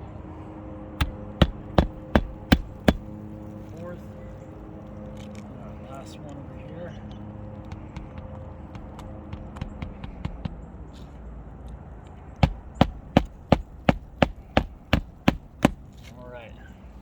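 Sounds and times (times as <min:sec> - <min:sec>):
hammer striking a nail: 0:01.0 - 0:03.1, 0:07.6 - 0:10.7, 0:12.4 - 0:16.0.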